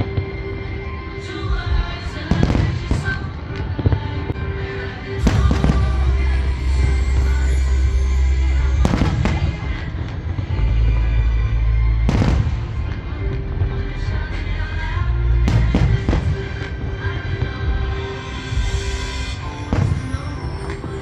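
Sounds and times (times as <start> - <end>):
fireworks bursting and crackling: 0.0 - 21.0
music with heavy bass: 4.4 - 21.0.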